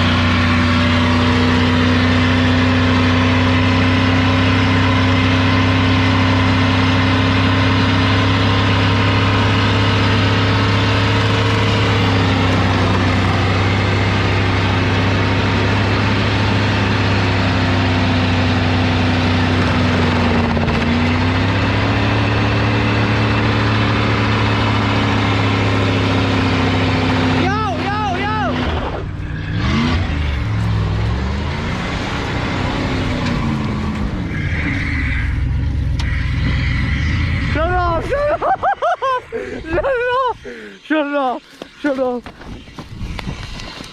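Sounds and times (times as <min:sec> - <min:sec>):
truck engine running: 0:00.0 - 0:43.9.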